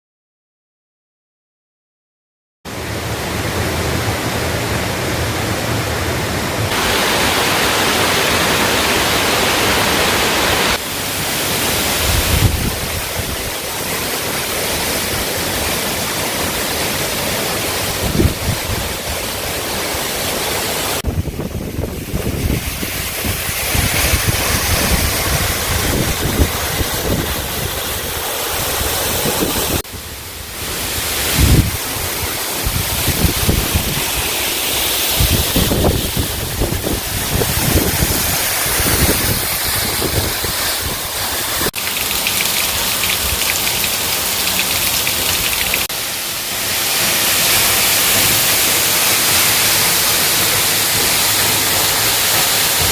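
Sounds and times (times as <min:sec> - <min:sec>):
waterfall rushing: 0:02.7 - 0:52.9
wind buffeting microphone: 0:21.0 - 0:29.8, 0:35.2 - 0:41.2.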